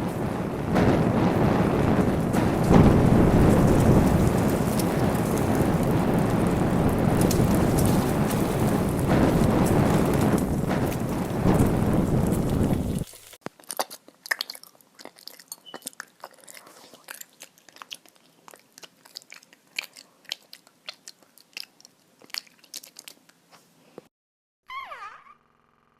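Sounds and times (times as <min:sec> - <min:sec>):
loud rushing noise: 0:00.0 - 0:13.0.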